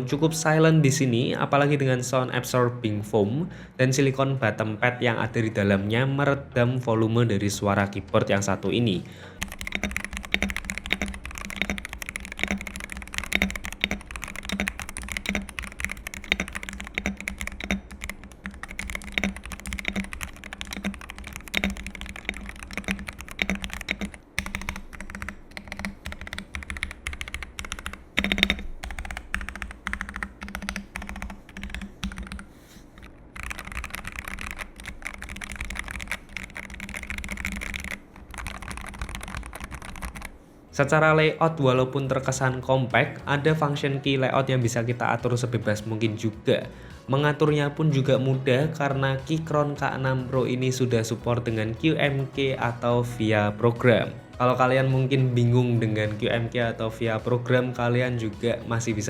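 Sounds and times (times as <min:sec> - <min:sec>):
typing on mechanical keyboard: 0:09.4 - 0:40.4.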